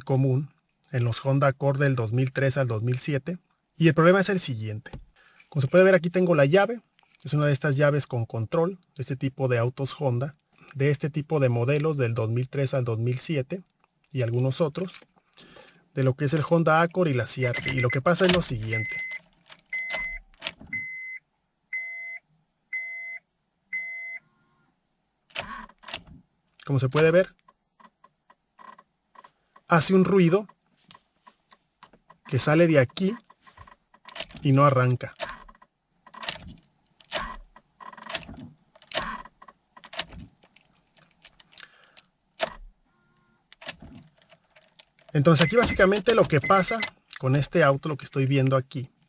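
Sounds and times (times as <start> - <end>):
car warning chime beeping: 17.4 - 24.3, 45.3 - 46.9
ignition switch clicks: 17.5 - 19.1
clicks: 43.6 - 47.2.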